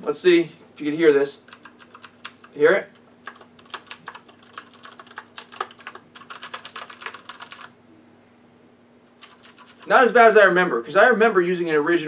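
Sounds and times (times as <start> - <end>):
mechanical keyboard typing: 1.5 - 7.7, 9.2 - 9.9.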